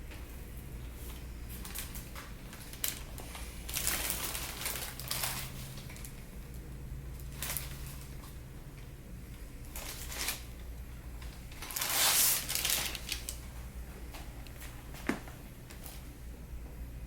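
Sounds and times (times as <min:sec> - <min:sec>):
rustling and rubbing: 0:11.6 - 0:13.3.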